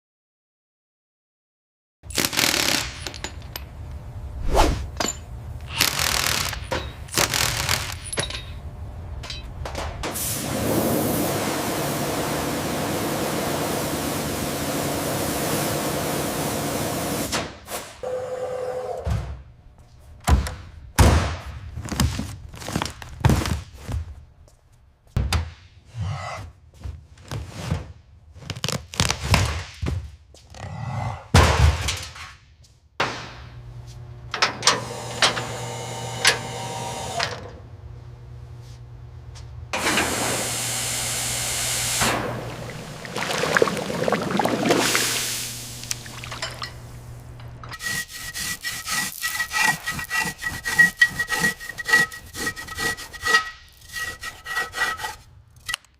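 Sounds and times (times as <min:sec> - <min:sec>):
loud steady hiss: 0:44.8 - 0:46.0.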